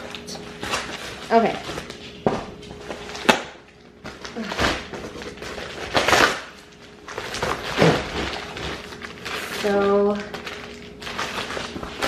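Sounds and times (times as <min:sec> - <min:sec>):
packaging rustling: 0:04.0 - 0:12.0.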